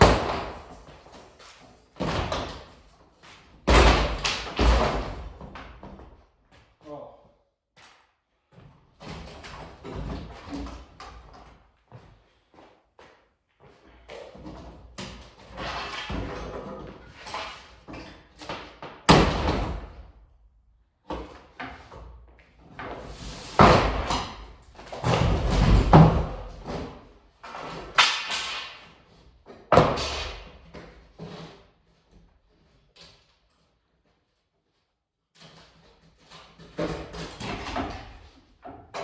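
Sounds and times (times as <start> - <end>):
sledgehammer blows on wood: 23.1 - 24.4.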